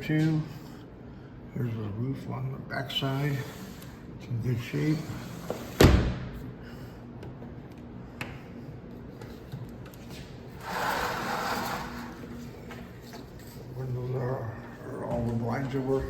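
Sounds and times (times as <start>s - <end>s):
window blinds rustling: 10.5s - 13.7s.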